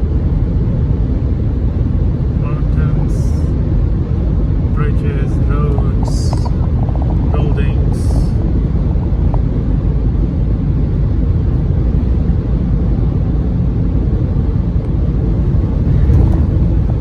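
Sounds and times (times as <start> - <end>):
wind noise: 0.0 - 17.0
tyre noise inside car: 15.8 - 17.0.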